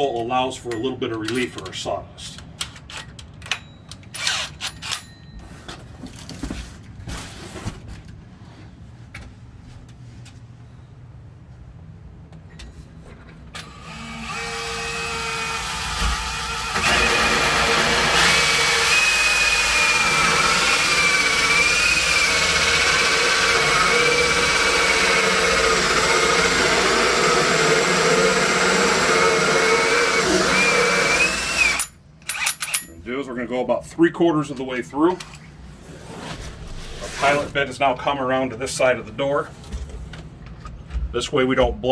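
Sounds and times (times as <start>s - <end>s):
power drill whine cutting wood: 13.6s - 31.9s.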